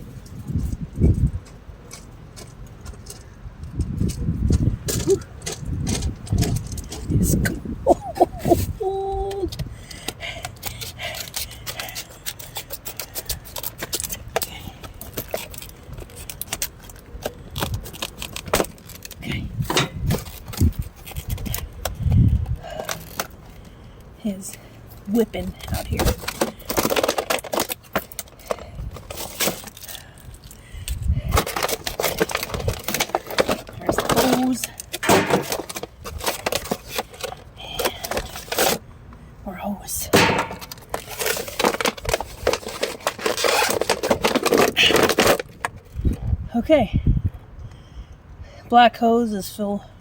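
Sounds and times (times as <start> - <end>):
wind rumble on microphone: 0.0 - 1.9, 2.8 - 9.9, 19.2 - 22.8, 30.6 - 33.0, 45.7 - 48.6
gear clattering and knocking: 18.3 - 21.3, 31.4 - 37.4, 40.1 - 44.6
gear clicking and rattling: 26.0 - 38.7.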